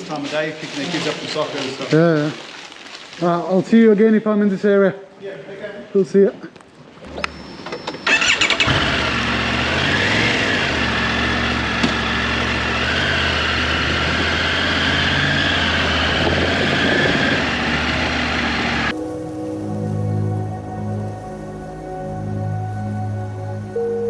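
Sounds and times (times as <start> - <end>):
motorcycle engine starting and running: 7.1 - 18.9
music: 18.9 - 24.0.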